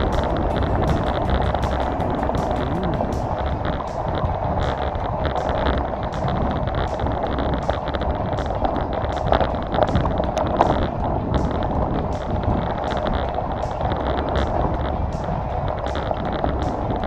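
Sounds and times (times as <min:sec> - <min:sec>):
wind noise on microphone: 0:00.0 - 0:17.0.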